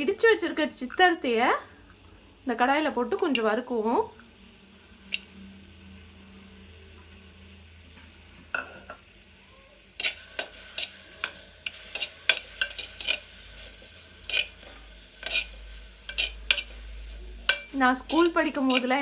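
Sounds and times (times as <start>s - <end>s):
spoon scraping clay pot: 10.0s - 19.0s.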